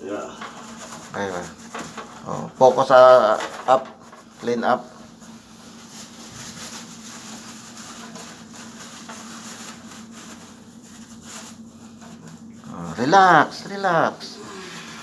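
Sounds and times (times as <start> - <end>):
steady low hum: 0.0 - 15.0
tissue rubbing and rustling: 4.1 - 14.2.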